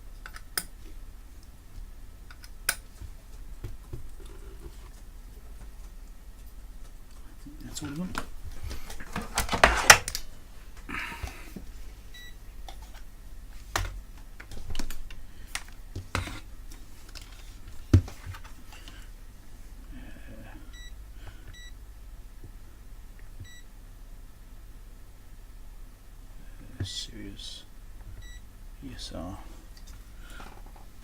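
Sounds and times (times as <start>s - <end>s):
meter electronic beeps: 20.7s - 21.8s, 23.4s - 23.7s, 28.2s - 28.4s.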